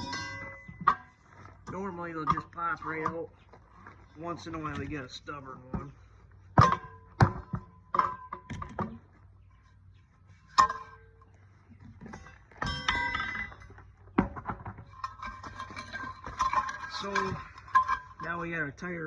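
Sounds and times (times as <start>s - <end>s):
ringing metal clatter: 0.0s - 3.3s, 6.6s - 9.0s, 10.4s - 11.4s, 12.0s - 18.8s
tire bar clanking on steel rim: 0.0s - 3.4s, 5.8s - 9.1s, 10.4s - 18.4s.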